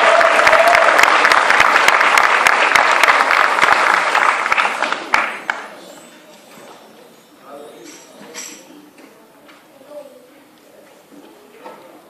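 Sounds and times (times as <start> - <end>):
audience applauding: 0.0 - 5.8.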